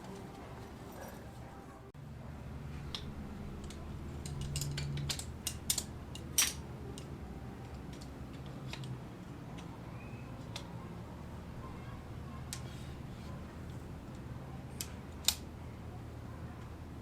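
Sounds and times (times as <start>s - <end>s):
steady low hum: 0.0s - 17.0s
hard objects clicking and clinking: 2.9s - 9.0s.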